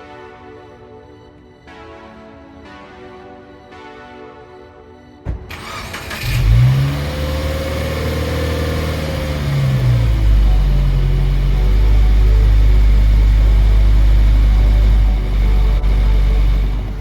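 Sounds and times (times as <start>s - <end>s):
soft music: 0.0s - 17.0s
car engine revving: 5.5s - 17.0s.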